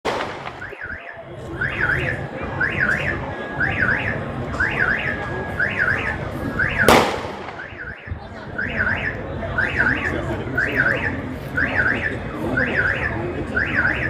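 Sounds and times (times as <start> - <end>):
loud sharp bang: 0.0 - 0.8, 6.8 - 8.0
street noise: 0.0 - 14.0
electronic alarm wailing: 0.6 - 6.9, 7.5 - 14.0.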